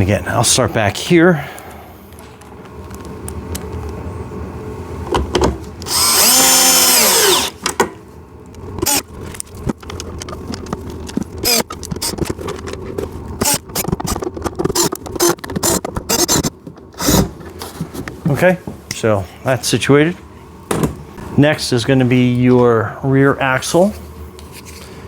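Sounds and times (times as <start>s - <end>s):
power drill driving a screw: 5.8s - 7.6s, 8.8s - 9.0s, 11.4s - 11.6s.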